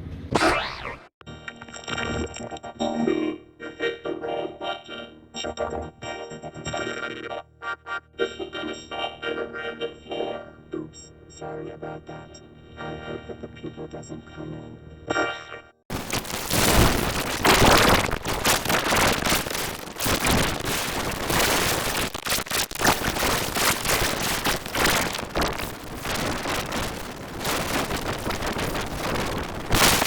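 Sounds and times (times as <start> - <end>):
harsh distorted crackling noise: 15.9 - 30.0.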